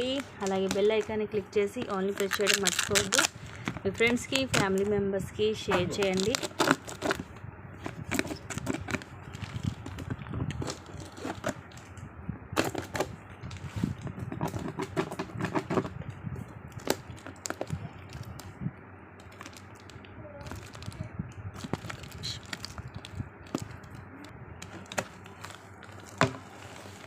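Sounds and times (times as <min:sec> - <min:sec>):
plastic packaging crinkling: 0:00.0 - 0:04.9, 0:05.9 - 0:12.0, 0:16.7 - 0:18.5, 0:19.2 - 0:27.0.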